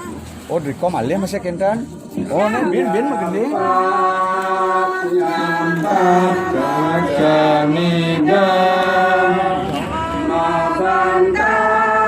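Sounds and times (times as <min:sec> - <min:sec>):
person singing slow chant: 0:03.0 - 0:12.0.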